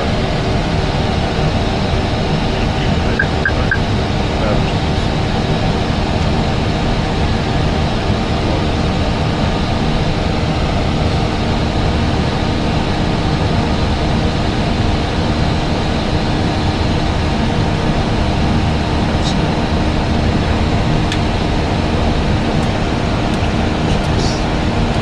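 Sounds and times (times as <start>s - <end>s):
airliner cabin engine rush: 0.0s - 25.0s.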